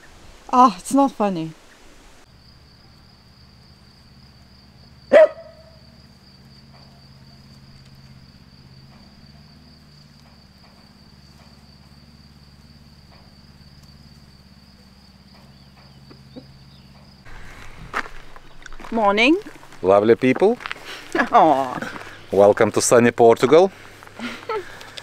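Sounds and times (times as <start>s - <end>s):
high insect trill: 0.0s - 25.0s
tractor engine running: 2.3s - 25.0s
dog barking: 5.1s - 5.8s.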